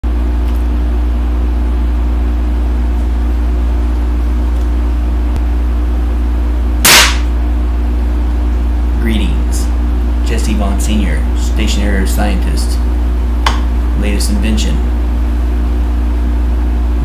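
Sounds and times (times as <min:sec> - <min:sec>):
low electrical hum: 0:00.0 - 0:17.0
sharp loud burst: 0:06.8 - 0:07.3.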